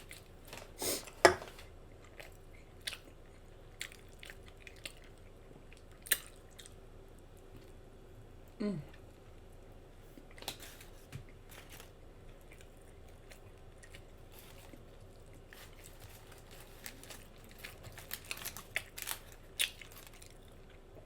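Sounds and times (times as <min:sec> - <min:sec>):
chewing and lip-smacking: 0:01.9 - 0:07.8, 0:12.2 - 0:21.0.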